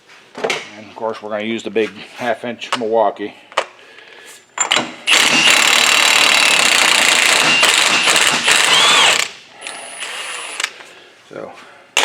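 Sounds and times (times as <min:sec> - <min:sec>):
impact wrench hammering: 0:04.6 - 0:09.3.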